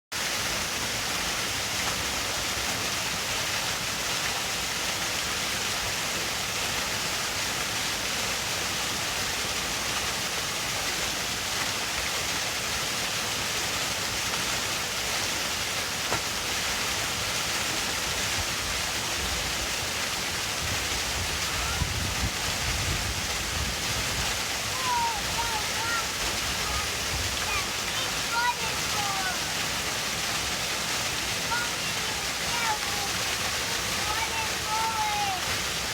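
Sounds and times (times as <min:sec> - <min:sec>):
waterfall pouring into pool: 0:00.1 - 0:35.9.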